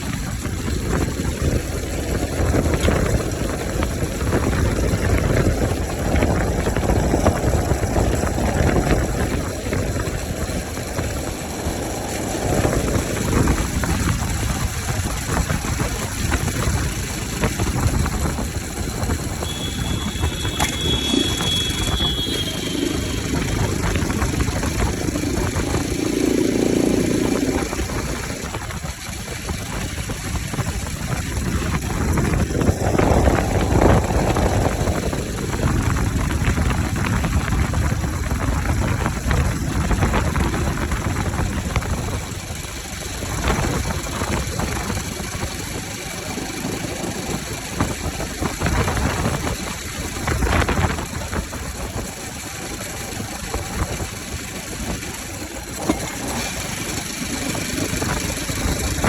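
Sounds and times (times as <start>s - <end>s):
motorcycle engine revving: 0.0s - 59.0s
short high steady tone: 19.4s - 23.9s.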